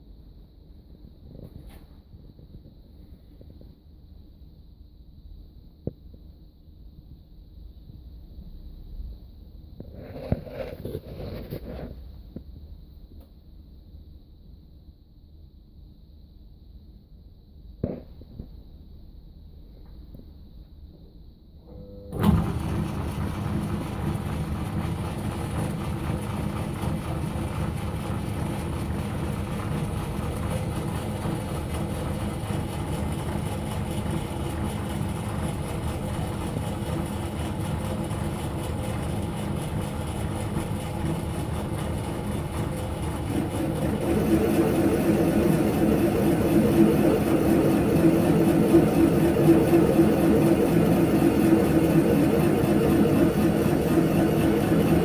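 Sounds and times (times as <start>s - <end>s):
lathe running: 22.1s - 55.0s.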